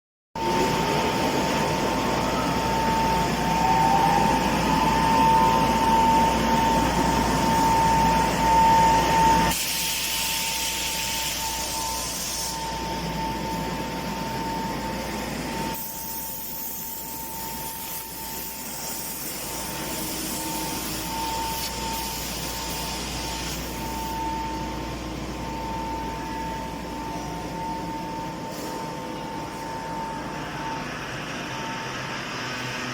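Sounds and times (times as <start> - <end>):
factory machinery whine: 0.4 - 32.9
mechanical hiss: 9.5 - 13.0.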